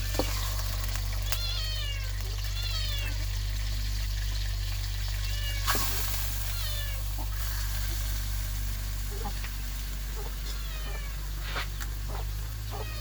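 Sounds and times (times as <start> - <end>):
low hum and hiss: 0.0 - 13.0
kittens meowing: 0.2 - 3.4, 5.1 - 7.6, 9.0 - 13.0.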